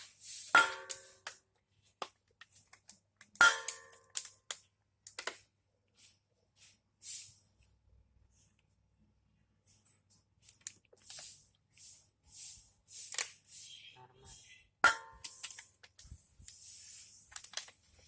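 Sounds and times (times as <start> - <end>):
short hissing scrapes: 16.1 - 17.3.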